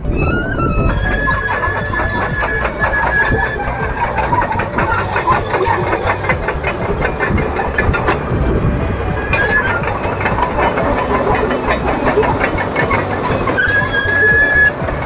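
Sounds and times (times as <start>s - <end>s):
bulldozer diesel engine running: 0.0s - 15.0s
high squeal from undercarriage: 0.0s - 15.0s
steel tracks clanking: 0.0s - 15.0s.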